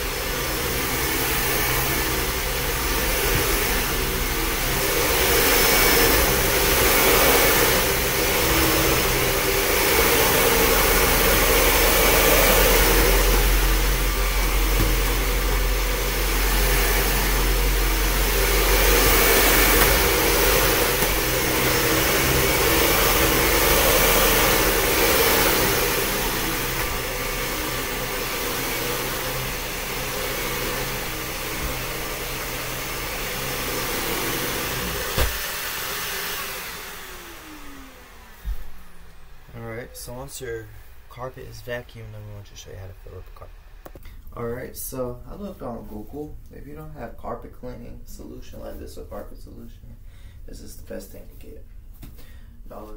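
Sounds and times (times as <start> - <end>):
vacuum cleaner on carpet: 0.0 - 44.0.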